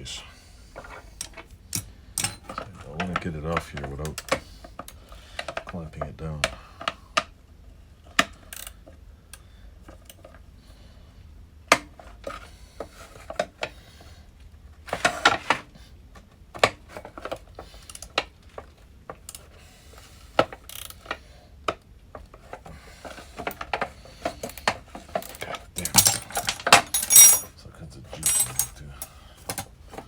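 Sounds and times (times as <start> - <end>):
metallic clinks and knocks of tools: 1.2 - 2.6, 25.2 - 27.5, 28.1 - 29.7.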